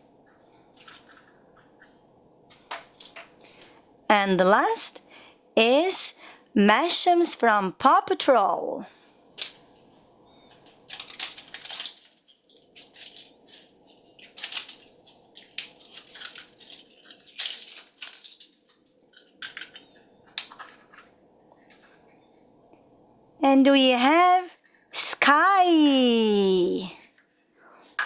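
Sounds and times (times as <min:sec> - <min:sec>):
plastic wrapper crinkling and tearing: 0:10.6 - 0:21.1.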